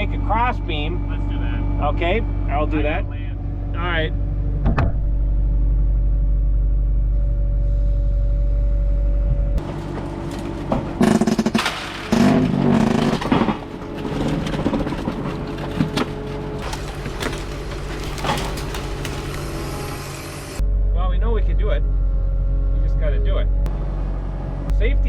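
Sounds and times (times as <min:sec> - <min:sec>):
skid steer engine idling: 0:00.0 - 0:20.7
clattering and knocking: 0:09.6 - 0:19.6.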